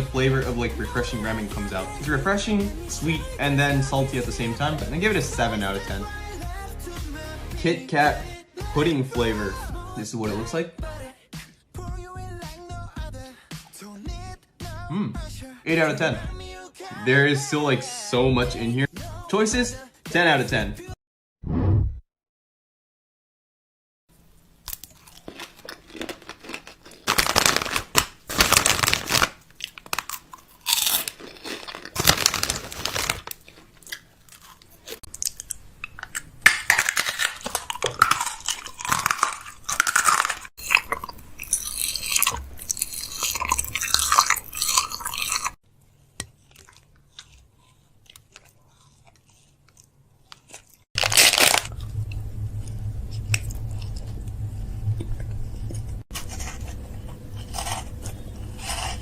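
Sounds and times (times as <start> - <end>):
crunchy snacks being chewed: 24.6 - 45.6, 46.2 - 52.2, 55.7 - 59.0
steady hum: 51.0 - 59.0.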